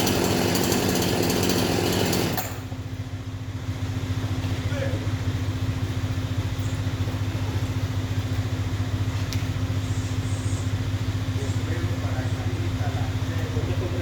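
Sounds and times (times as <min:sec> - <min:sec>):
chainsaw idling: 0:00.0 - 0:05.8.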